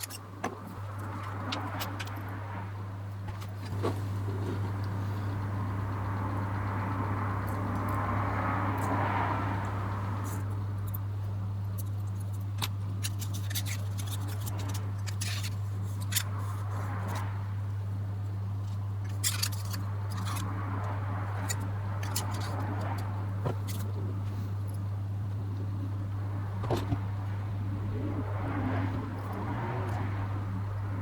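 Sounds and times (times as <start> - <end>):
lens parts clicking and scraping: 0.0 - 2.4, 11.7 - 17.2, 18.6 - 20.5, 21.3 - 24.0
low electrical hum: 0.0 - 31.0.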